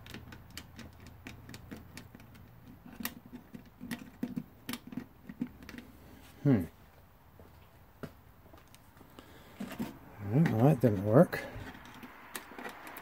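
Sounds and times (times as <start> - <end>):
tool clicking inside lock: 0.0 - 5.8.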